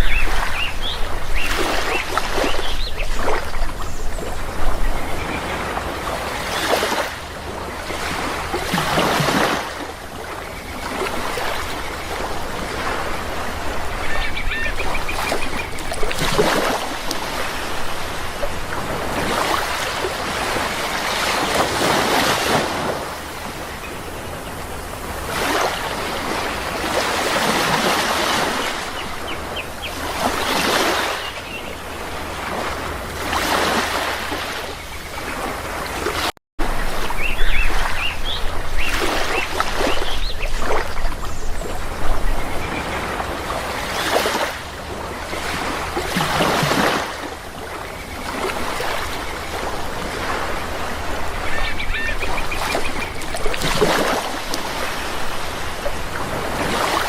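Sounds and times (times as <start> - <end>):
sea waves breaking: 0.0 - 57.0
short bird calls: 14.0 - 15.8, 51.4 - 53.2.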